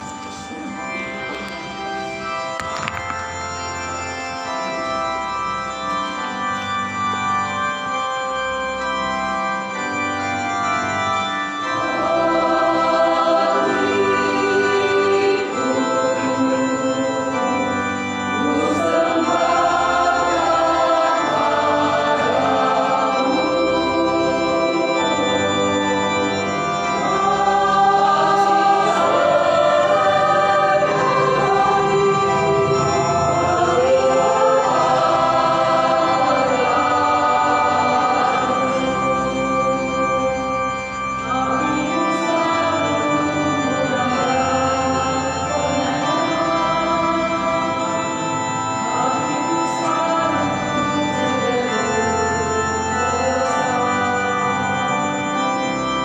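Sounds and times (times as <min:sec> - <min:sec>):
organ chords: 0:00.0 - 0:56.0
choir singing a hymn: 0:11.2 - 0:56.0.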